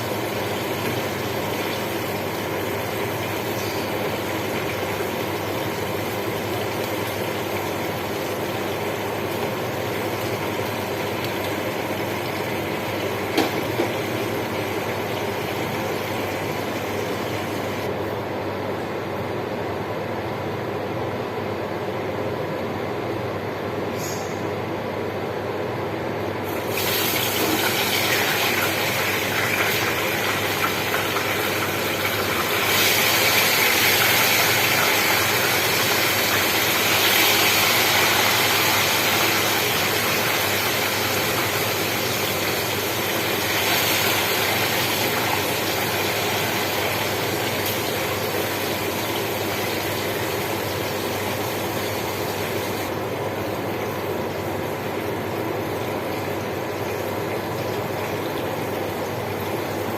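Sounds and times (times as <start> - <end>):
food sizzling in hot oil: 26.4 - 52.9.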